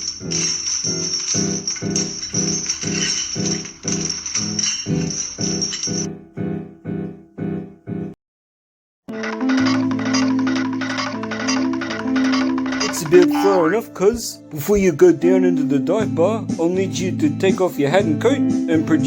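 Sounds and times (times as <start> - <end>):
bright jingling: 0.0 - 6.1.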